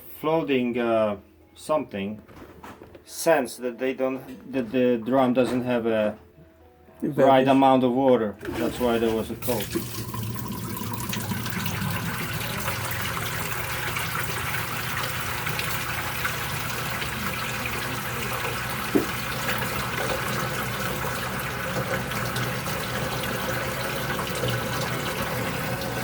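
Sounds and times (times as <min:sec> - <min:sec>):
water filling washing machine drum: 0:08.4 - 0:26.0.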